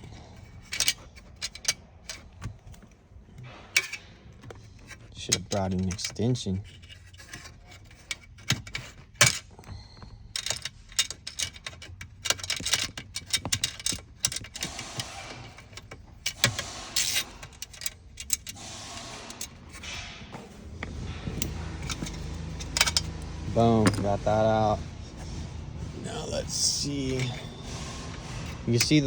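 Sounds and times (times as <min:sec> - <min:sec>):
metal scraping: 0:00.0 - 0:09.6, 0:10.4 - 0:29.0
ratchet clicking: 0:10.4 - 0:24.9.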